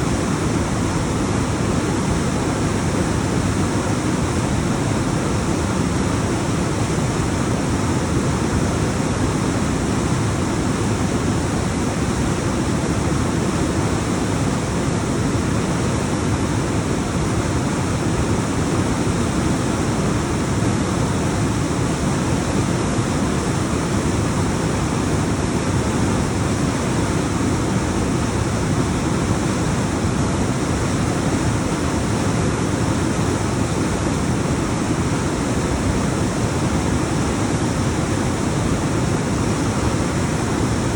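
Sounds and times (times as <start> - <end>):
waterfall rushing over rocks: 0.0 - 40.9.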